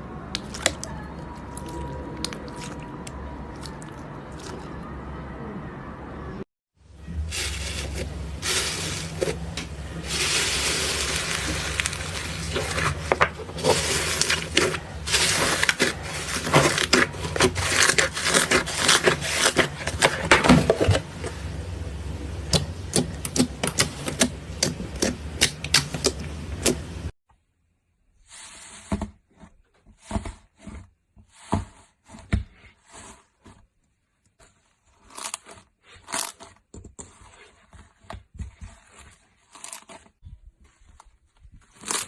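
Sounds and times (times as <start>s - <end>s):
squishy slime noise: 0.2s - 5.0s, 7.0s - 27.1s.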